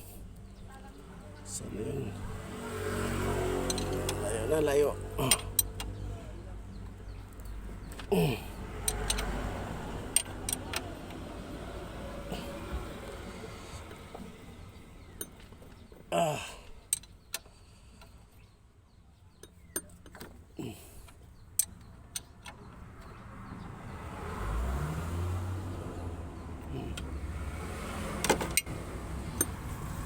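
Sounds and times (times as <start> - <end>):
vehicle engine rumbling: 0.0 - 30.0.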